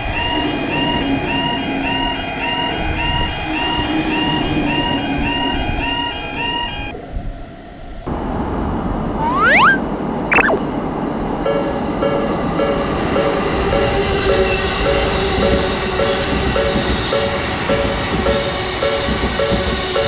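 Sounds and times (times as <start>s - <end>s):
rising whistle-like tone: 9.2s - 10.6s.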